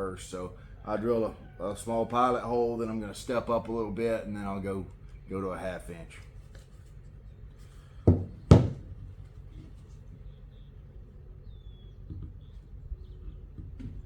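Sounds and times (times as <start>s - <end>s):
hard object knocking on surface: 8.1s - 8.8s.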